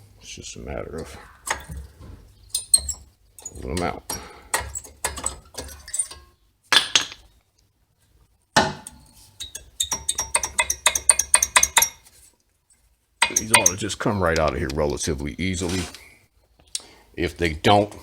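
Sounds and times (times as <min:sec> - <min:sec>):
metal clicking and clinking: 0:09.4 - 0:12.0, 0:13.2 - 0:14.6
metal knocks: 0:13.2 - 0:14.0.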